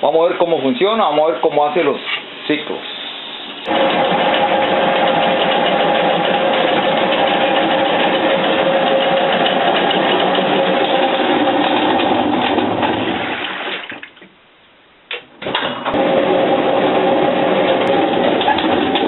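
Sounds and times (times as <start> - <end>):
washing machine motor humming: 3.5 - 14.0, 15.4 - 19.0.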